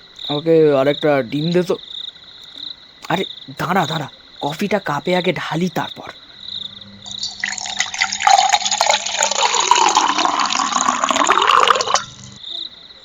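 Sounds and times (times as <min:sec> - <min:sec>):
crickets chirping: 0:00.0 - 0:13.0
coffee pouring into cup: 0:07.1 - 0:12.4.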